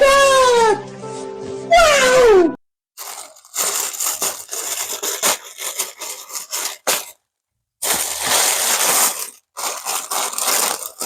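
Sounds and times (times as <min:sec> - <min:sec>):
plastic bag rustling and scraping: 0:03.0 - 0:07.2, 0:07.8 - 0:11.0.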